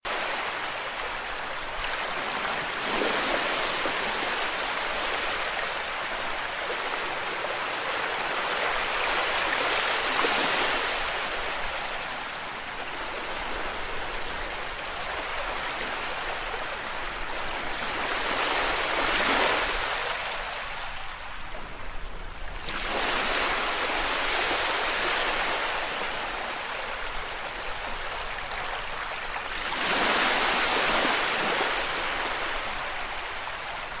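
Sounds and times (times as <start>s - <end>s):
ocean waves washing on shore: 0.0s - 34.0s.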